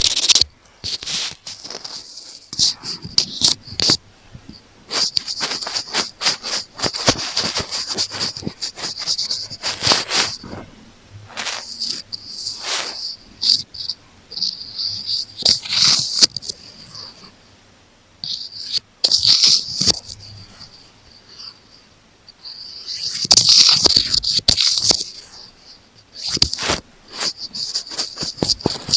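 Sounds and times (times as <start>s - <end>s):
quick clicks: 0.0s - 10.6s
scratching on an earphone: 0.0s - 17.3s, 18.2s - 28.9s.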